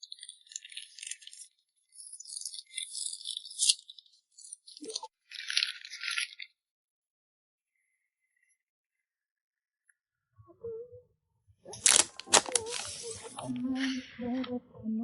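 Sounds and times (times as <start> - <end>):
packaging crinkling and rustling: 11.7 - 13.5.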